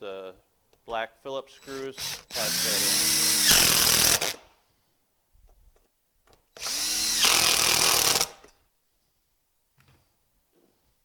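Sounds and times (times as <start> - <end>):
power drill driving a screw: 1.6 - 4.4, 6.6 - 8.5.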